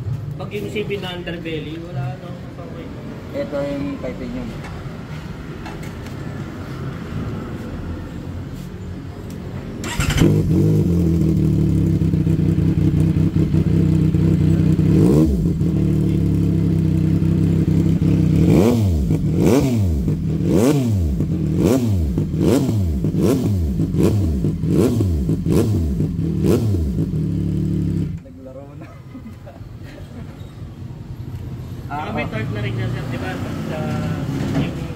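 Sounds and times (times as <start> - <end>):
motorcycle engine revving: 9.8 - 28.2.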